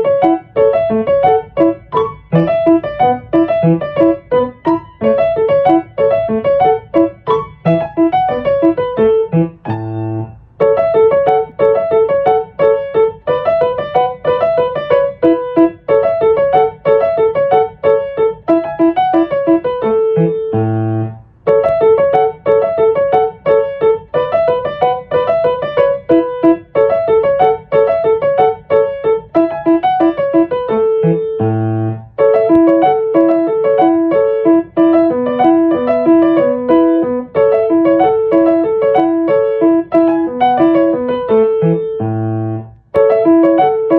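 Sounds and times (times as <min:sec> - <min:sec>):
background piano music: 0:00.0 - 0:43.9.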